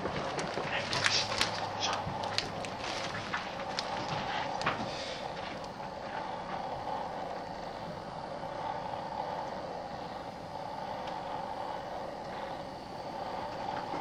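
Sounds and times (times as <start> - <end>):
steady drone: 0.0 - 14.0
faint ticks: 11.0 - 11.3.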